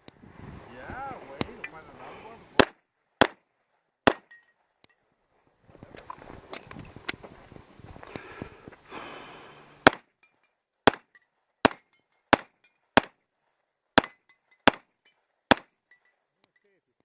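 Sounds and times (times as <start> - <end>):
rough uneven noise: 0.2 - 2.6
pistol shots: 2.6 - 3.4, 4.0 - 4.4, 9.8 - 10.1, 10.8 - 13.2, 14.0 - 14.9, 15.5 - 15.7.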